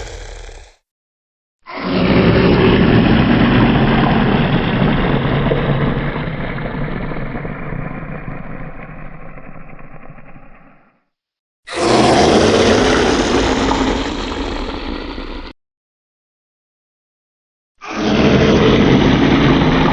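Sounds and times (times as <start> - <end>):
rough monster growl: 0.0 - 0.8, 1.7 - 4.6, 11.7 - 15.5, 17.8 - 19.9.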